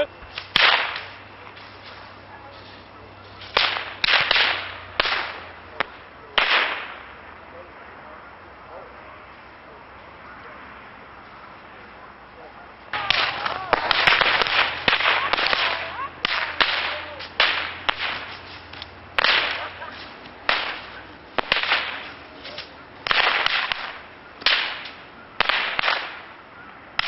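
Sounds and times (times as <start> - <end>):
sharp pops: 0.0 - 1.6, 3.5 - 7.2, 13.0 - 26.4.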